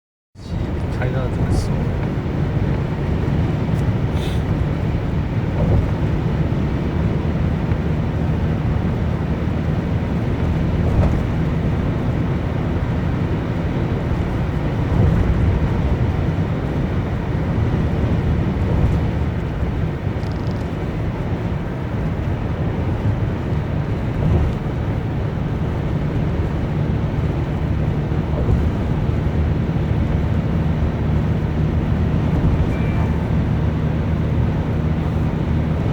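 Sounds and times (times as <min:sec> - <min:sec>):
vehicle engine droning: 0:00.4 - 0:35.9.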